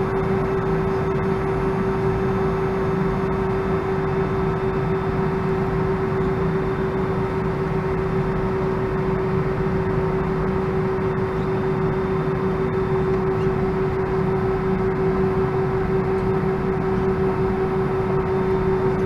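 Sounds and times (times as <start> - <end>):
airplane cabin rumbling hum: 0.0 - 19.0.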